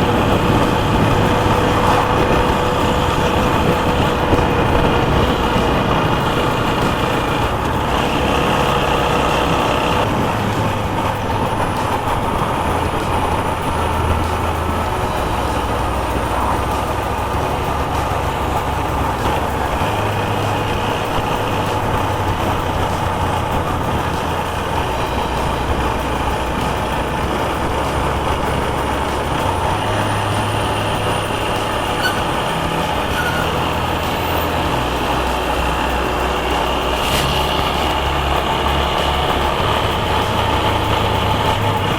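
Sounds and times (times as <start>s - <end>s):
motorcycle engine running: 0.0s - 41.9s
wind and road noise: 0.0s - 41.9s.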